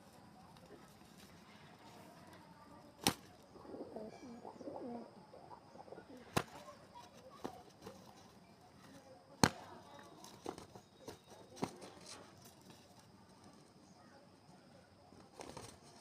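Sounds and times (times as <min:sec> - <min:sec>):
sharp slaps: 0:03.0 - 0:03.3, 0:06.3 - 0:06.6, 0:09.4 - 0:09.8
pigeons cooing: 0:03.5 - 0:06.9.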